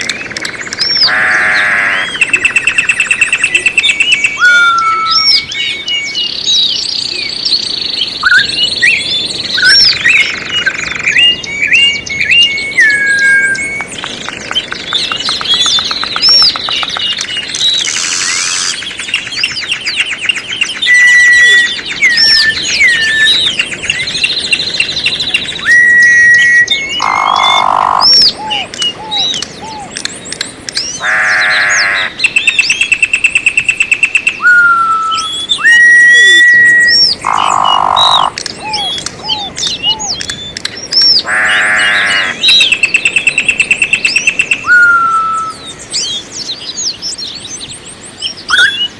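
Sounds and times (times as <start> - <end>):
loud harsh bird calls: 0.0 - 30.0, 30.8 - 47.4
birds singing and calling: 0.0 - 48.9.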